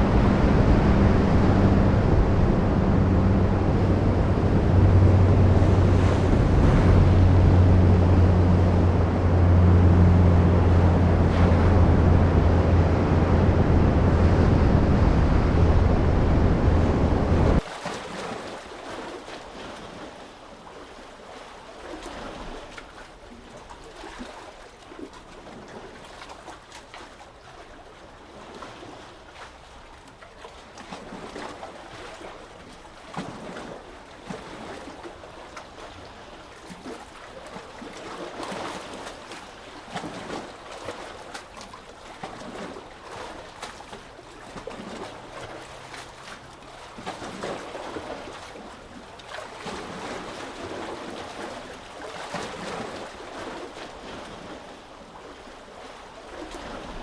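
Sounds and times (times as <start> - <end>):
sea waves lapping and splashing: 0.0 - 57.0.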